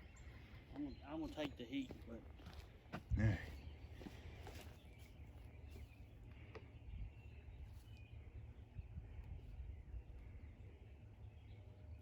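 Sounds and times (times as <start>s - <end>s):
wind rumble on microphone: 6.8s - 10.7s.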